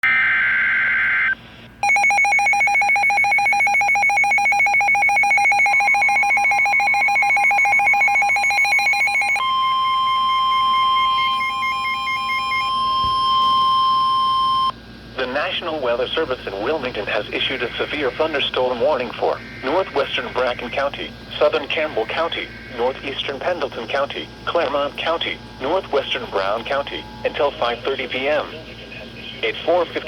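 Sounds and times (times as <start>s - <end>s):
rapidly pulsing electronic alarm: 0.1s - 14.8s, 17.6s - 28.8s
steady warning alarm tone: 1.8s - 14.8s, 17.4s - 28.8s.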